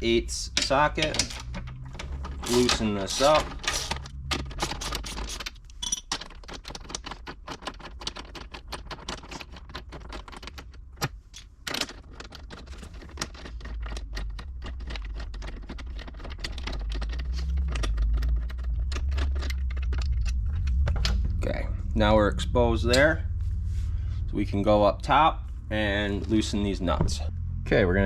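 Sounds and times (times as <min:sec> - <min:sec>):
hand ratchet clicking: 0:02.4 - 0:04.0
low hum: 0:16.6 - 0:28.0.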